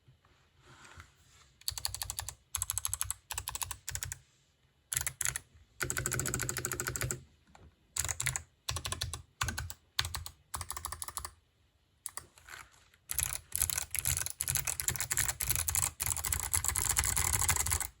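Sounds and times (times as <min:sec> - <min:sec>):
clicky mechanical keyboard typing: 0:01.6 - 0:04.2, 0:04.9 - 0:07.2, 0:08.0 - 0:11.4, 0:12.1 - 0:12.4, 0:13.1 - 0:18.0.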